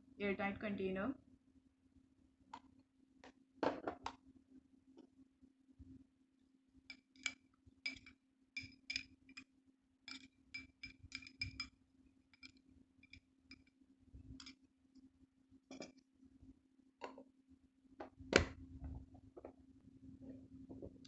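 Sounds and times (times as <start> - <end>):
faint low hum: 0.0 - 21.0
spoon clinking against glass: 6.9 - 9.5, 10.1 - 11.7, 12.3 - 13.7.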